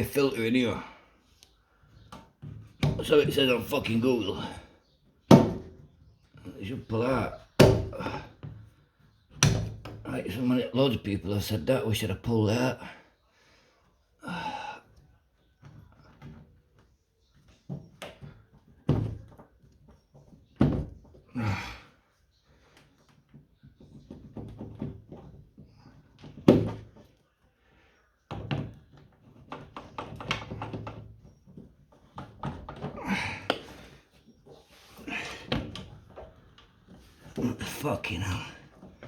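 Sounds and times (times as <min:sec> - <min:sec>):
knocks thunks and scraping: 0:02.0 - 0:04.7, 0:05.3 - 0:08.7, 0:28.3 - 0:39.0.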